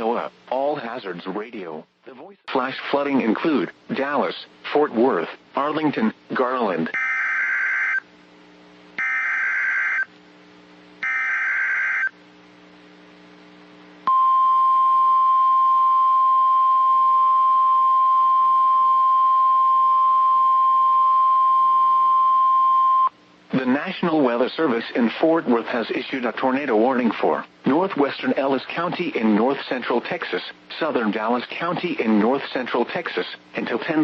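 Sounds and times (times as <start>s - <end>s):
steady warning alarm tone: 6.9s - 8.0s, 9.0s - 10.1s, 11.0s - 12.1s
warbling data tones: 11.0s - 12.1s.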